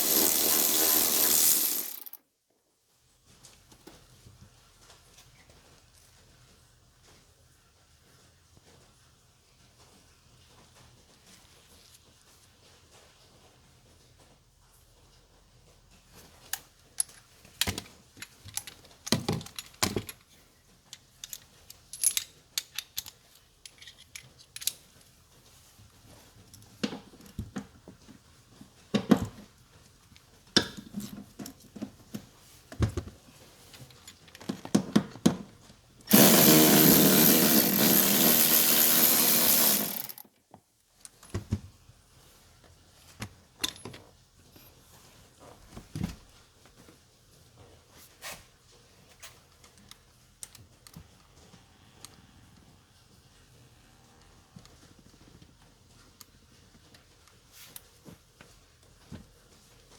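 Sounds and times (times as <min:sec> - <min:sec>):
small electric motor running: 0:00.0 - 0:02.1, 0:36.1 - 0:40.2
clicks and knocks of tools: 0:16.4 - 0:25.2.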